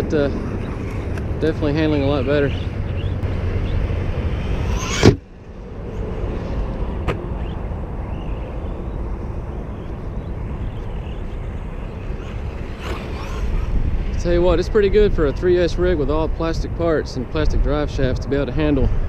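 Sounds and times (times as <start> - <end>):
electric motor whining: 4.3 - 5.3.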